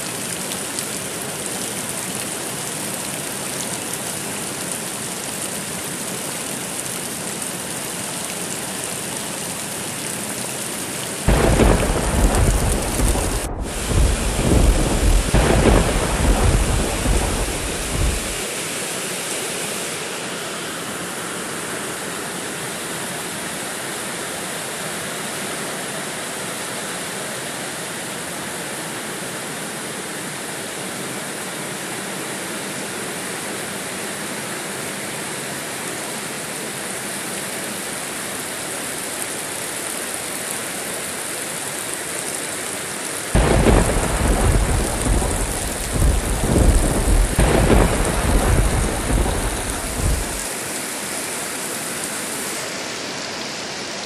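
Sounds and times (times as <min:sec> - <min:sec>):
heavy rain hissing: 0:00.0 - 0:27.1, 0:35.8 - 0:54.0
rolling thunder: 0:11.3 - 0:18.4, 0:43.4 - 0:50.5.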